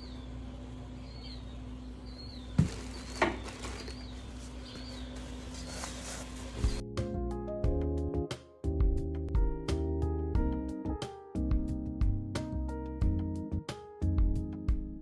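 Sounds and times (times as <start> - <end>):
steady low hum: 0.0 - 6.9
high bird chirps: 1.0 - 5.2.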